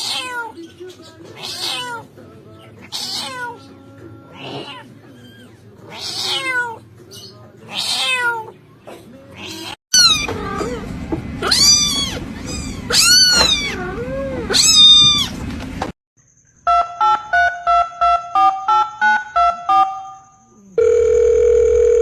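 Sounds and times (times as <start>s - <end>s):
kittens meowing: 0.0s - 0.6s, 1.3s - 2.1s, 2.8s - 8.6s, 9.4s - 15.4s.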